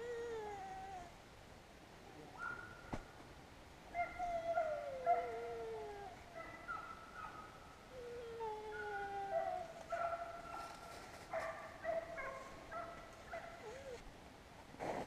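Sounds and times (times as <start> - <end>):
dogs baying: 4.0 - 14.0.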